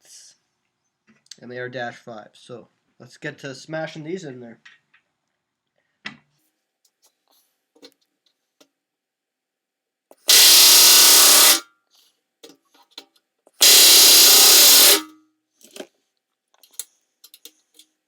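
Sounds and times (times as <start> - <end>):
pneumatic rivet gun hammering: 10.2 - 11.6, 13.6 - 15.1
small handling clicks: 16.6 - 18.0.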